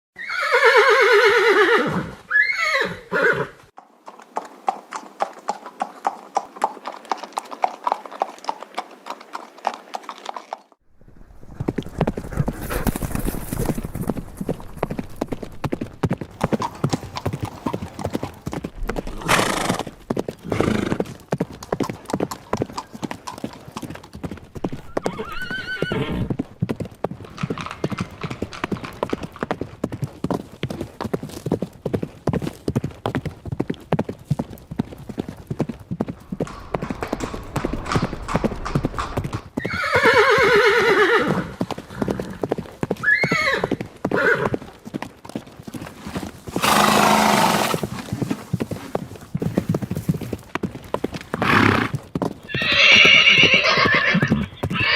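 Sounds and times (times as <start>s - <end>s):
horses neighing: 0.2s - 3.7s, 12.0s - 21.1s, 24.5s - 26.5s, 27.2s - 29.5s, 36.2s - 44.6s, 46.5s - 48.1s, 51.4s - 54.9s
horse hooves clattering: 3.6s - 54.9s.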